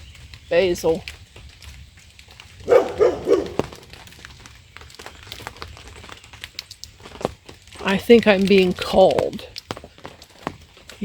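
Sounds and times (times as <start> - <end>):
dog barking: 2.6 - 3.8.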